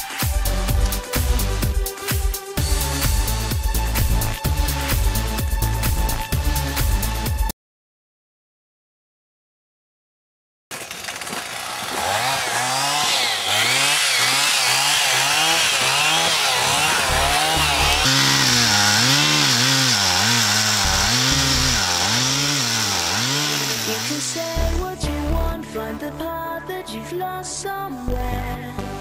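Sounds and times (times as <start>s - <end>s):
chainsaw cutting tree: 10.7s - 24.9s.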